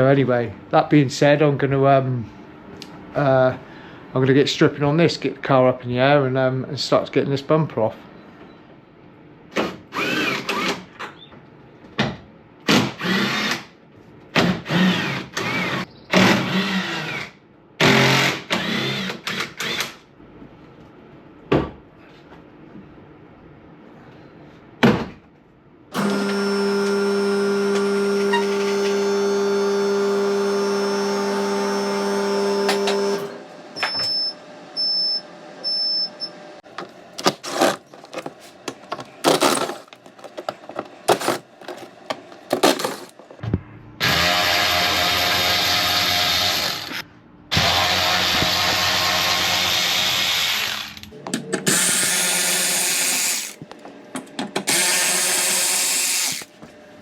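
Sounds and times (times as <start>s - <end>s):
power tool running: 26.0s - 33.6s, 37.3s - 43.3s, 44.0s - 51.1s, 51.7s - 53.6s, 54.6s - 56.6s
car lift motor humming: 26.0s - 33.8s.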